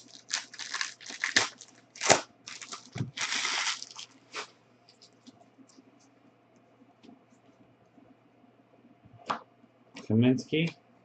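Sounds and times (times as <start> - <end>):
wrapper tearing and crinkling: 0.0 - 5.2.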